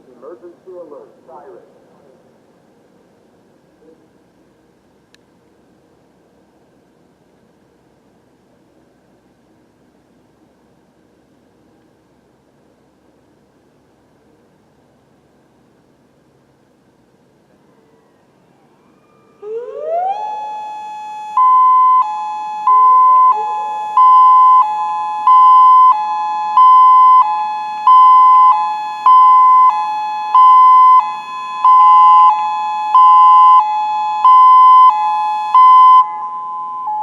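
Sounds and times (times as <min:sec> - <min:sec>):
second rising siren tone: 0:17.7 - 0:37.0
warning siren hi-lo tone: 0:18.6 - 0:37.0.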